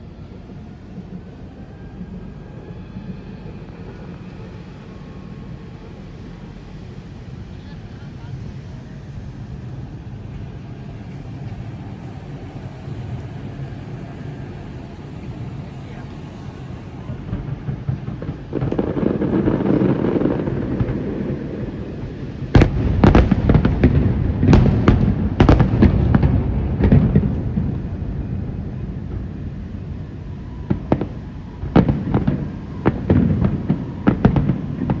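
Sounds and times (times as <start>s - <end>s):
low rumbling background noise: 0.0s - 35.0s
fireworks bangs: 7.7s - 35.0s.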